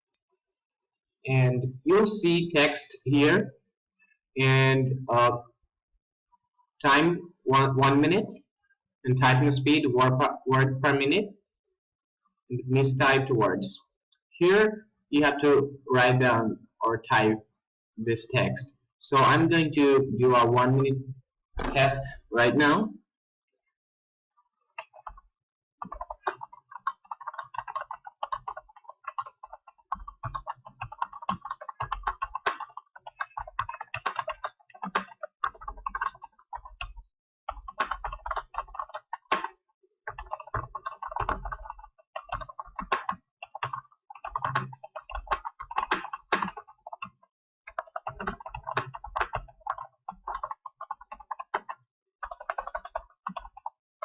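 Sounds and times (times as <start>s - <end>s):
fast typing on keyboard: 24.6s - 53.8s.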